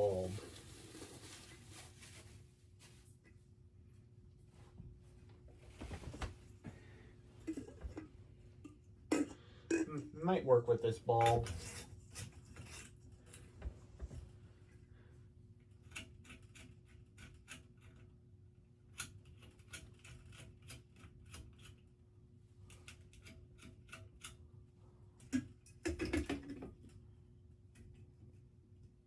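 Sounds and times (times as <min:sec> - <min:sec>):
faint steady hum: 0:00.0 - 0:29.0.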